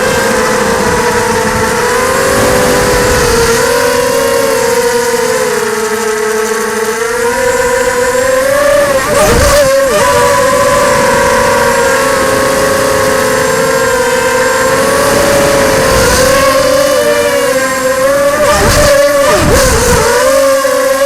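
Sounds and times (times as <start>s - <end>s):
drone motors whining: 0.0s - 21.0s.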